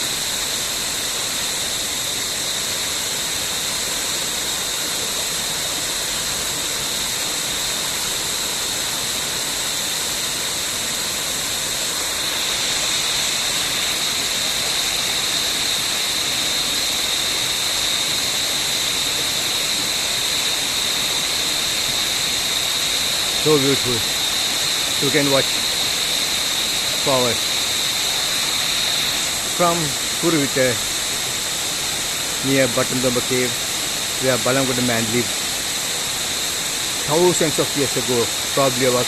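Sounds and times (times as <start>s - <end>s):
waterfall rushing: 0.0s - 39.0s
high-pitched hum: 10.3s - 39.0s.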